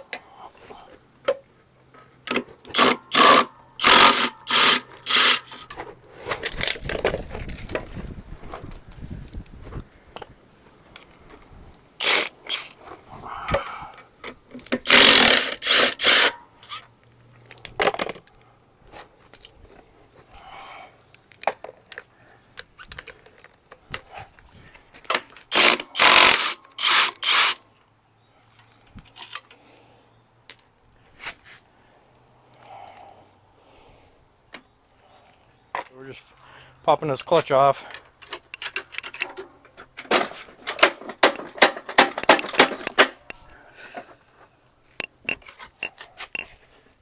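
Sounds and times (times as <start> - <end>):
power tool bursts: 2.7 - 5.7, 12.0 - 12.7, 14.8 - 16.4, 25.5 - 27.6
tools clinking on metal: 19.3 - 19.7, 30.5 - 30.8, 45.0 - 46.6.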